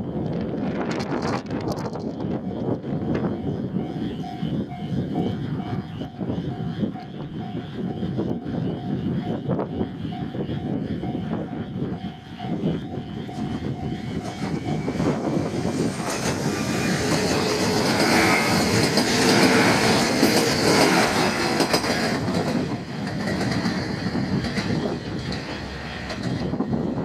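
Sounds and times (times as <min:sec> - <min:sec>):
railcar passing at high speed: 0:00.0 - 0:27.0
wheels clattering over rail joints: 0:13.4 - 0:27.0.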